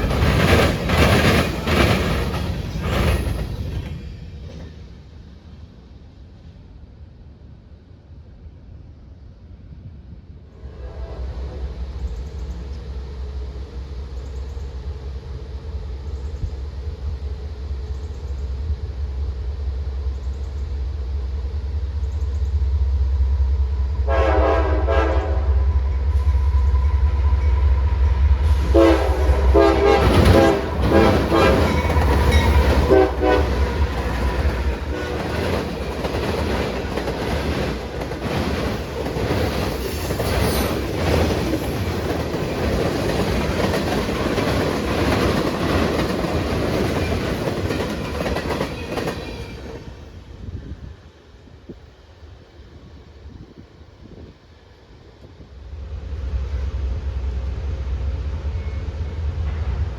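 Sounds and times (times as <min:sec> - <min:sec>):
train wheels clacking on rails: 0:00.0 - 0:05.0, 0:26.0 - 0:50.1
diesel locomotive engine rumble: 0:00.0 - 0:59.9
train horn blasts: 0:10.5 - 0:12.1, 0:24.0 - 0:35.7.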